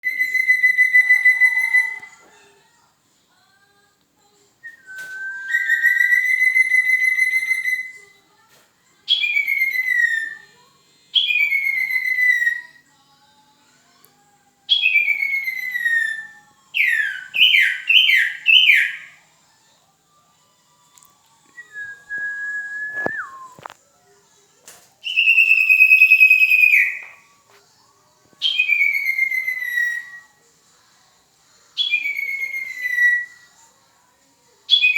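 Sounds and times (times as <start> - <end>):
recorded owl calls: 0.0 - 2.2.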